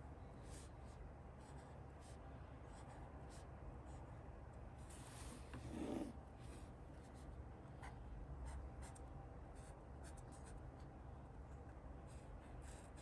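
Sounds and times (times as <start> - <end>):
pen scratching on paper: 5.6 - 6.2, 12.1 - 13.0.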